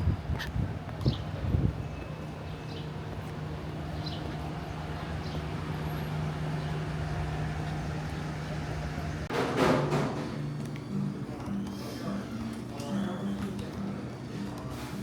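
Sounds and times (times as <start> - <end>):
low engine hum: 0.0 - 9.3
traffic noise: 0.0 - 9.3.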